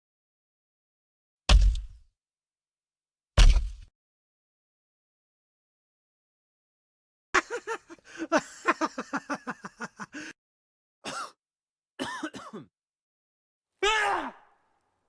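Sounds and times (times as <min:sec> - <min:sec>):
person making laugh-like sounds: 0:07.4 - 0:10.3.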